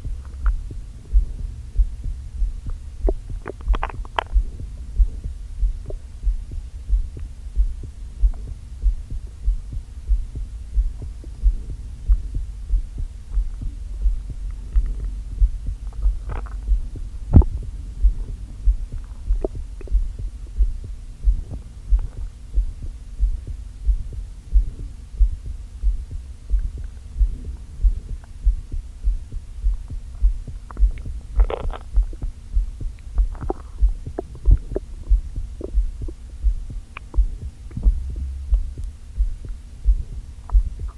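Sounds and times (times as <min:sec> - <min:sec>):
stomach gurgles: 0:00.0 - 0:25.5, 0:29.6 - 0:40.9
steady pulse thumping: 0:00.0 - 0:40.9.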